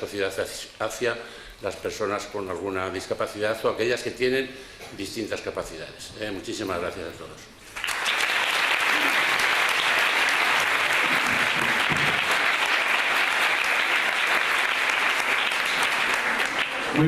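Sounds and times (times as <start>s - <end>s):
audience applauding: 7.7s - 17.0s.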